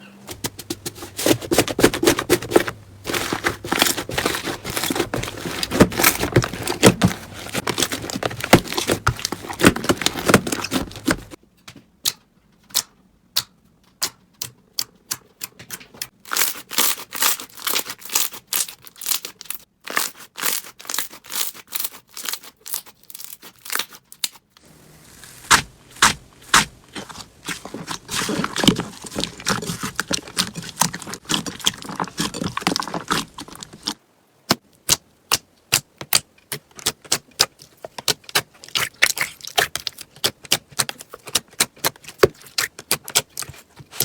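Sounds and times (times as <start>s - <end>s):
slime crackling: 0.4s - 11.4s, 24.6s - 34.0s.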